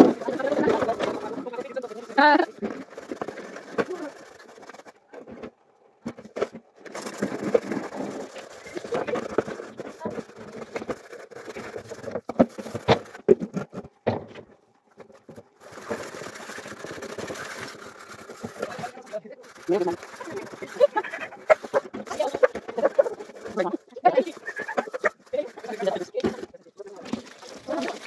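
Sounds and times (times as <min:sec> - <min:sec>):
indistinct voices: 0:00.0 - 0:04.5.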